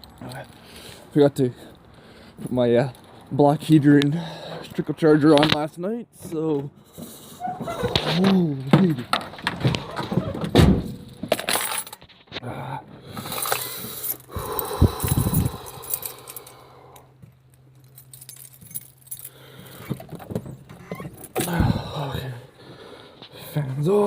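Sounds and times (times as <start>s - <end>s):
keys jangling: 10.9s - 12.1s, 13.2s - 21.6s.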